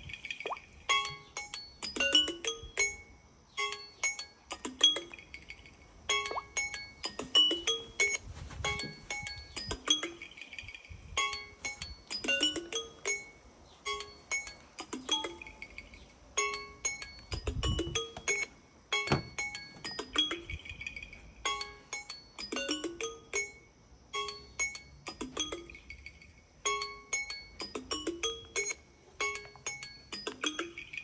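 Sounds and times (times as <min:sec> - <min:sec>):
dull knocks: 0:19.1 - 0:19.9.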